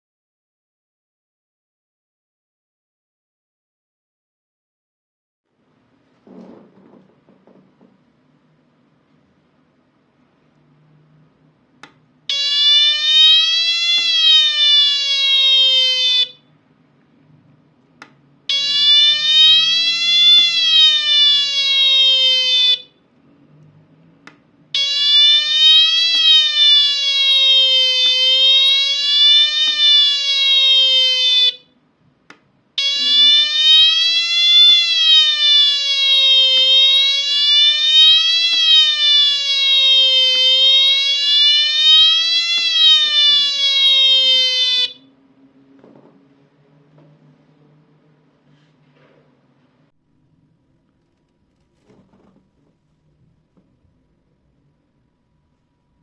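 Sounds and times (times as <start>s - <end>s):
buzzy electronic siren wail: 12.3s - 16.4s, 18.5s - 22.9s, 24.7s - 31.7s, 32.8s - 45.1s.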